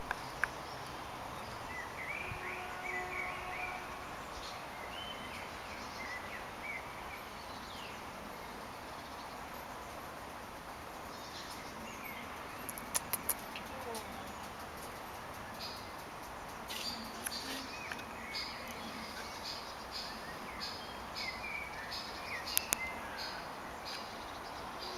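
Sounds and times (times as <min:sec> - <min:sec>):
birds chirping: 0:00.0 - 0:24.9
steady background hiss: 0:00.0 - 0:24.9
sharp clicks: 0:12.6 - 0:18.1, 0:22.5 - 0:22.9.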